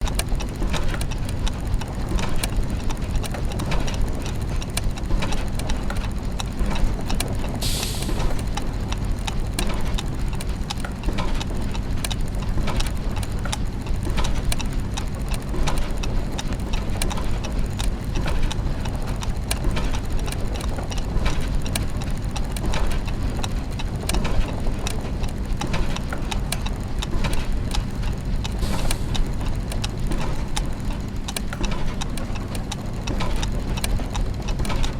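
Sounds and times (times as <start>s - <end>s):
clockwork gears ticking: 0.0s - 34.9s
low mechanical hum: 0.0s - 34.9s
short steam hiss: 7.6s - 8.4s.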